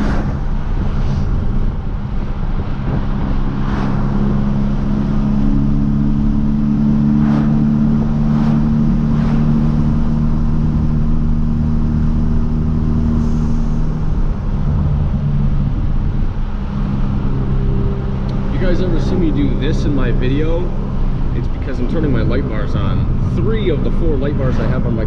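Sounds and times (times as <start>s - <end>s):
car exhaust drone: 0.0s - 25.0s.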